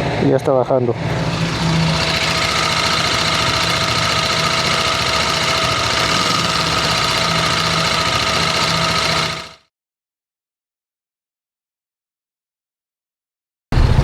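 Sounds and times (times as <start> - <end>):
radiator fan whine: 0.0 - 9.6
motorcycle engine idling clatter: 1.3 - 9.6.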